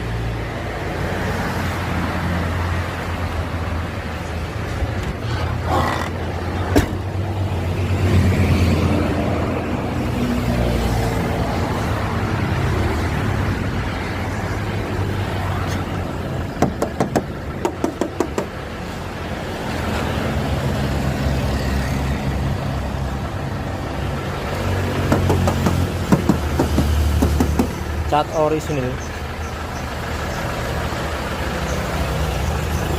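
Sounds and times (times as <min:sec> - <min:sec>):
diesel engine idling: 0:11.2 - 0:32.9
sharp knocks: 0:16.6 - 0:18.6, 0:25.0 - 0:27.9.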